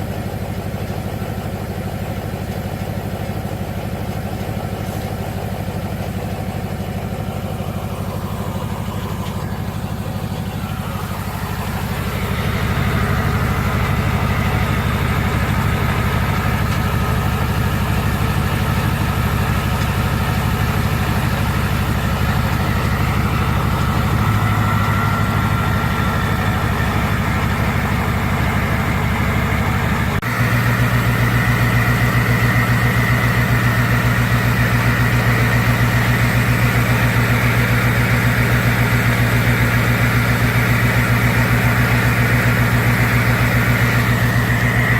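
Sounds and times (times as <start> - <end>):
diesel engine running: 0.0 - 44.9.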